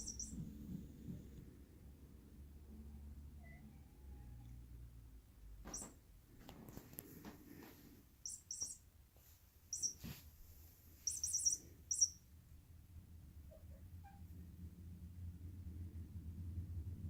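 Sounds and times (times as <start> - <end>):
high-pitched bird-like chirps: 0.0 - 0.4, 8.2 - 8.9, 9.7 - 10.1, 11.0 - 12.2.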